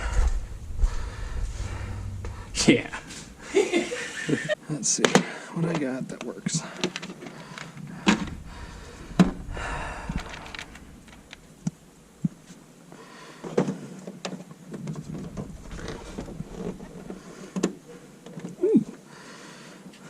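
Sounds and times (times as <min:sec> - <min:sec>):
small hard parts clicking and knocking: 0:06.2 - 0:08.4.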